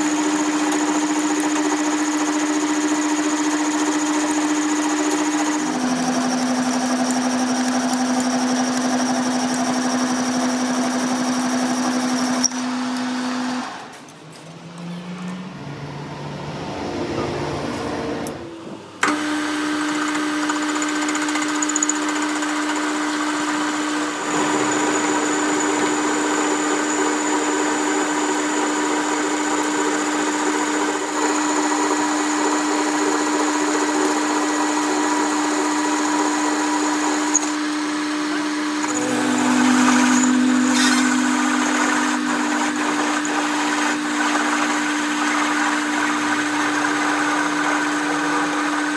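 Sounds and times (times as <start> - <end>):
power tool motor running: 0.0 - 48.9
low sliding sounds: 14.3 - 19.0, 38.9 - 44.8.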